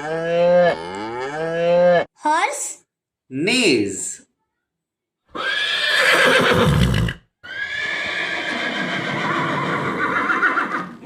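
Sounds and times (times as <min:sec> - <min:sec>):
horse neighing: 0:05.3 - 0:11.0.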